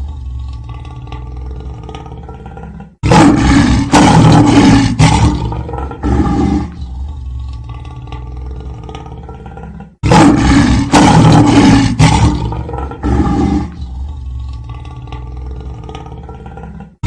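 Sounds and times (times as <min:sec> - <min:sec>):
loud rough roar: 0:03.0 - 0:06.8, 0:10.0 - 0:14.8.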